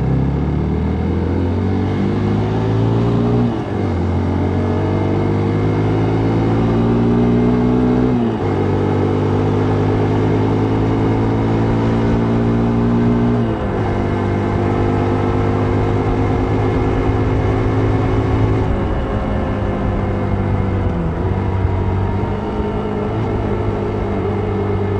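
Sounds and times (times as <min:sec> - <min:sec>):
vehicle engine running: 0:08.0 - 0:24.9.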